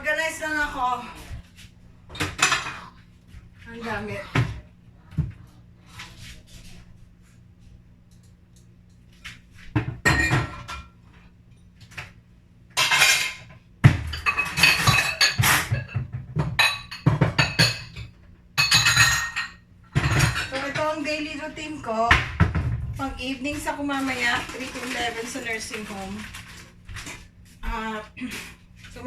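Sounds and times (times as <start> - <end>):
dishes and cutlery clattering: 2.1 - 3.0, 9.8 - 11.0, 12.8 - 21.0.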